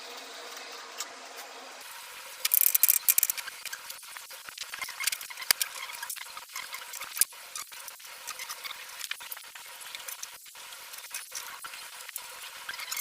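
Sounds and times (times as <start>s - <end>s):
clicks and scrapes on machine parts: 2.4s - 4.0s, 4.6s - 7.3s.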